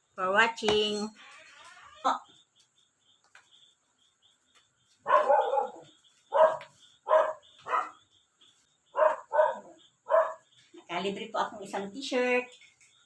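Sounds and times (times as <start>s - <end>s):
dog barking: 5.0s - 8.1s, 8.9s - 10.5s.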